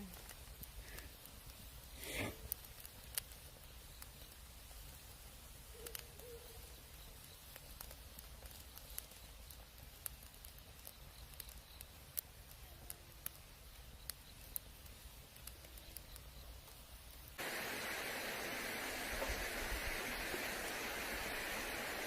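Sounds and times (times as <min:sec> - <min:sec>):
loud steady hiss: 0:00.0 - 0:05.8, 0:13.1 - 0:22.0
campfire crackling and popping: 0:00.0 - 0:22.0.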